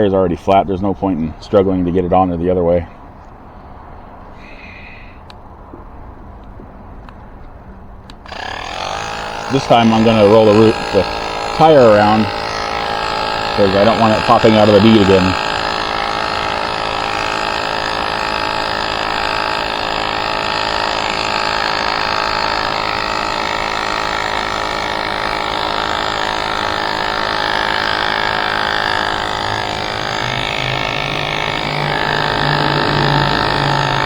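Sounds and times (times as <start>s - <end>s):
electric tire inflator running: 8.2s - 34.0s.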